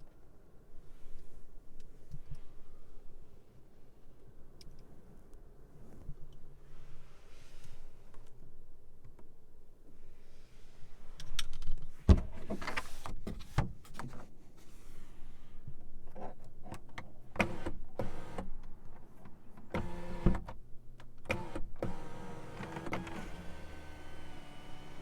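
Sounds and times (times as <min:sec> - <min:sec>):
small electric motor whirring: 0:19.7 - 0:20.5, 0:21.3 - 0:25.0.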